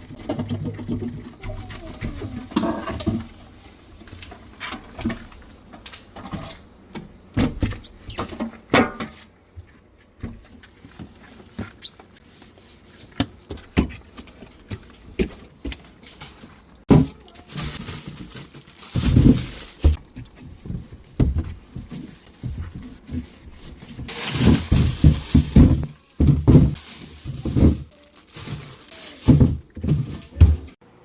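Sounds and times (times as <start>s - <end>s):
household objects clattering: 0.0s - 6.7s, 13.1s - 30.8s
faint voices: 1.2s - 3.0s, 16.9s - 18.2s, 24.1s - 30.8s.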